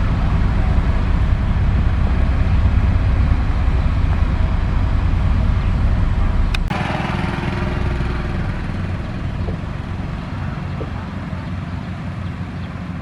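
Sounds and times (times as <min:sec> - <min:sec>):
diesel engine rumbling: 0:00.0 - 0:13.0.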